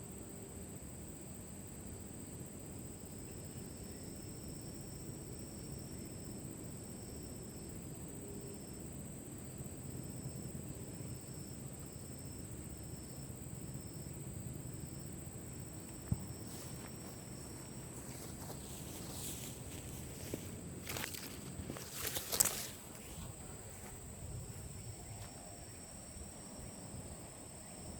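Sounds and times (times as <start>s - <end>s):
insect high-pitched trill: 0.0s - 27.9s
insect short high call: 10.0s - 27.9s
rustling: 15.8s - 24.7s.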